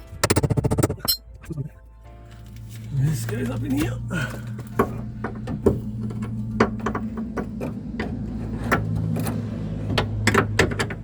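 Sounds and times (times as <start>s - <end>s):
metal clinks and knocks: 0.2s - 1.2s.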